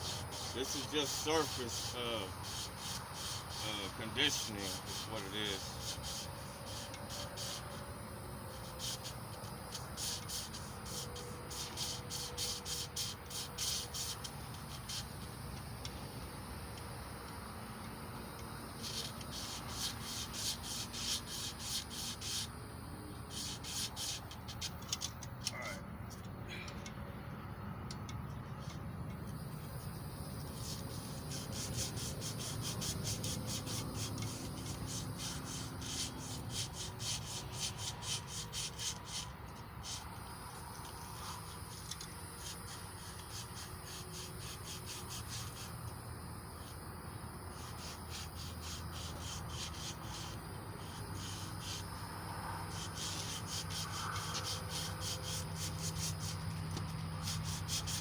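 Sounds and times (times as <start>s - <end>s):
emery cloth rubbing on metal: 0.0s - 7.8s, 47.4s - 58.0s.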